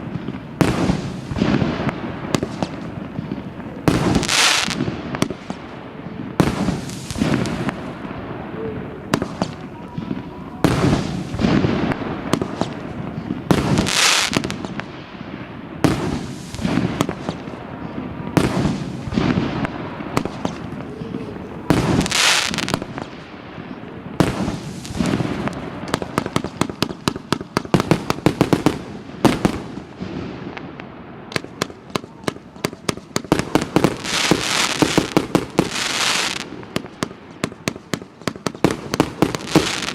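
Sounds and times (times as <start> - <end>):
fireworks launching and bursting: 0.0 - 39.9.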